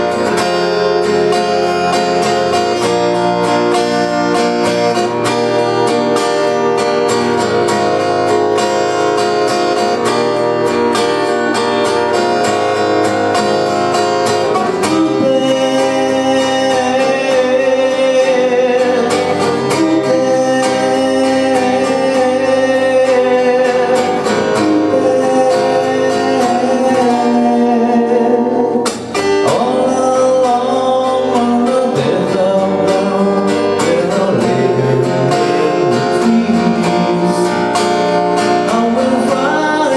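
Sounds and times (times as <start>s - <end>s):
acoustic guitar music: 0.0s - 39.9s
person singing: 14.5s - 39.9s.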